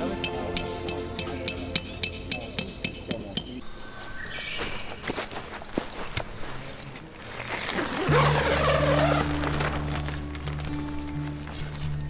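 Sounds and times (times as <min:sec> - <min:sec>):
background music with bass: 0:00.0 - 0:03.6.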